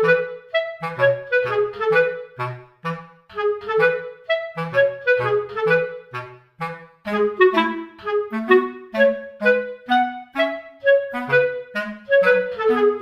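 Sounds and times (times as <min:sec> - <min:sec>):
light instrumental tune: 0:00.0 - 0:13.0.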